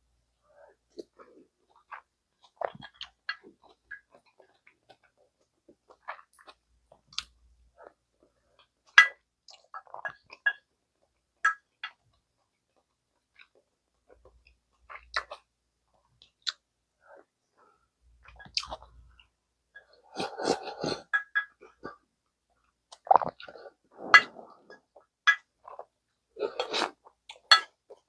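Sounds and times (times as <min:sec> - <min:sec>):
chewing: 0:18.2 - 0:18.9.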